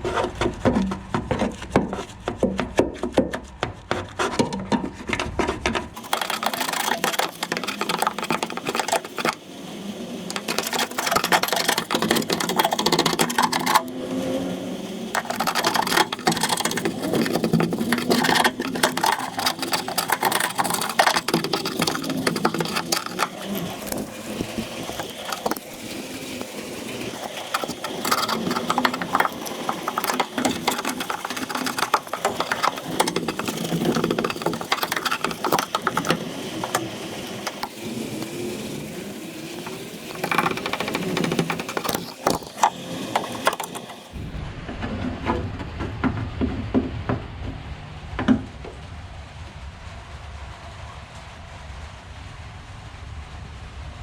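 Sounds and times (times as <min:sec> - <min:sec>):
tools and parts clicking and rattling: 0:04.4 - 0:09.4, 0:10.3 - 0:13.9, 0:15.1 - 0:38.4, 0:39.3 - 0:44.2.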